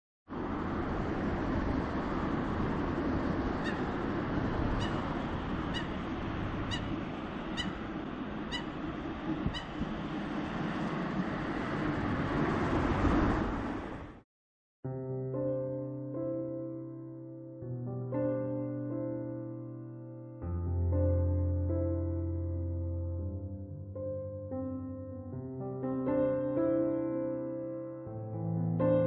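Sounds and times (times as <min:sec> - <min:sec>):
steady rumbling: 0:00.8 - 0:12.3.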